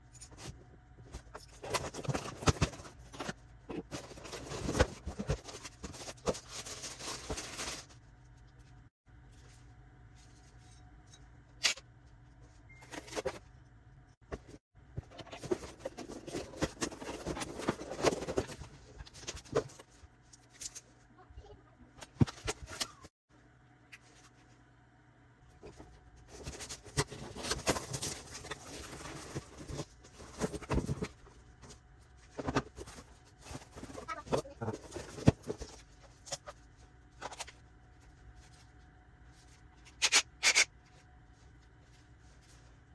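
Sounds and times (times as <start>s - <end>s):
packaging rustling and scraping: 0.3s - 8.1s, 14.3s - 20.9s, 25.6s - 42.9s.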